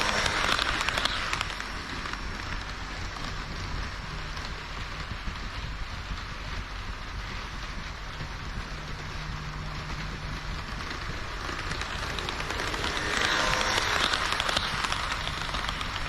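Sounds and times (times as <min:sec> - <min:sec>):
model train wheels on rail: 0:00.0 - 0:16.0
rapid clicking: 0:00.0 - 0:16.0
motor hum: 0:03.4 - 0:16.0.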